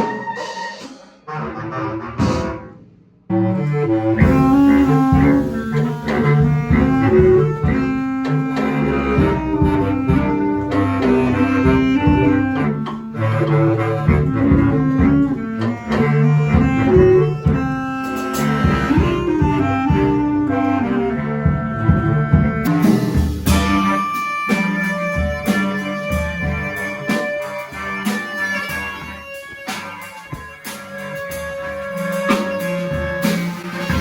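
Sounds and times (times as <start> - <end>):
bass clarinets playing metal riff: 0.0 - 34.0
drum kit hitting hard: 21.5 - 34.0.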